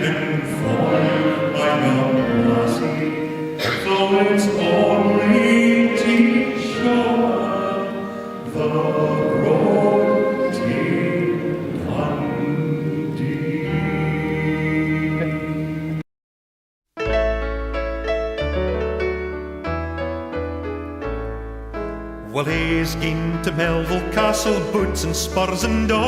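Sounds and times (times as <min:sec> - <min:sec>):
folk music with long held notes: 0:00.0 - 0:16.0.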